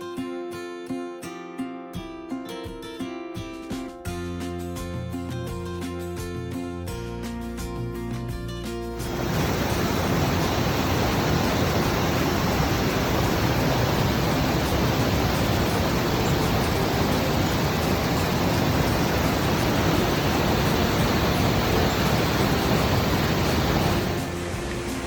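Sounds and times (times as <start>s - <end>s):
background guitar music: 0.0s - 25.0s
rushing falling water: 9.0s - 25.0s.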